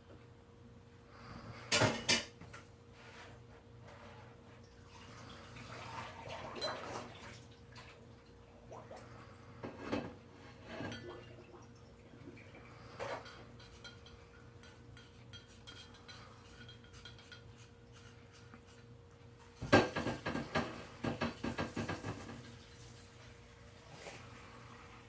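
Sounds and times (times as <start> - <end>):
clicks and taps at dish: 13.1 - 18.1.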